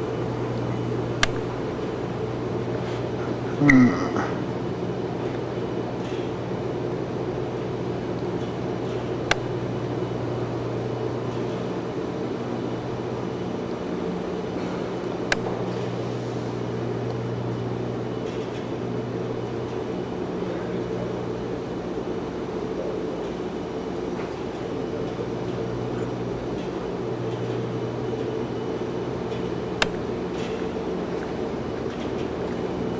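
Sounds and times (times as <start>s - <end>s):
low machinery hum: 0.0s - 32.9s
short sharp clicks: 1.2s - 1.5s.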